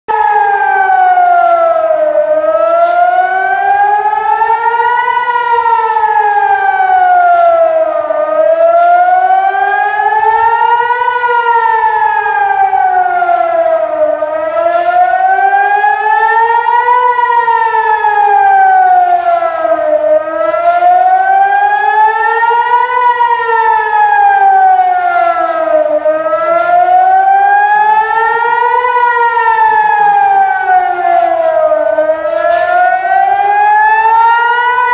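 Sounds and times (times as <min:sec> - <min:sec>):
air-raid siren wailing: 0:00.1 - 0:34.9.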